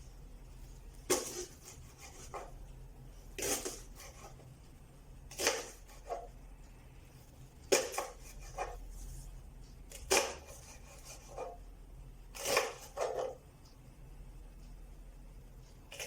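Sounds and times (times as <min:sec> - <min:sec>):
knife slicing leeks on board: 0:01.1 - 0:02.5, 0:03.4 - 0:04.4, 0:05.3 - 0:06.3, 0:07.7 - 0:08.8, 0:09.9 - 0:11.6, 0:12.4 - 0:13.4.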